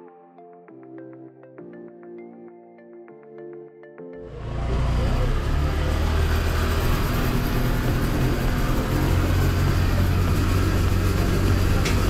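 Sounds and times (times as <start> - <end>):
vehicle engine running: 4.3 - 12.0.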